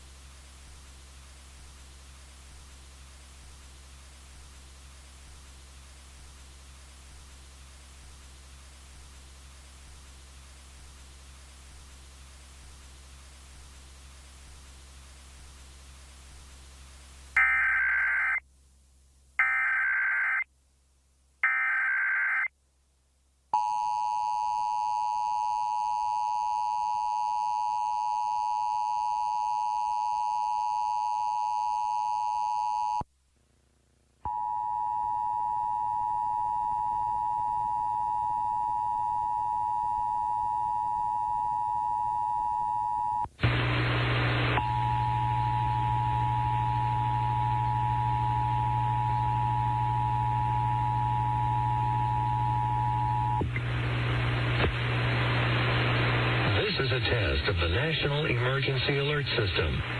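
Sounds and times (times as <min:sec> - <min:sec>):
hiss and hum: 0:43.2 - 0:59.9.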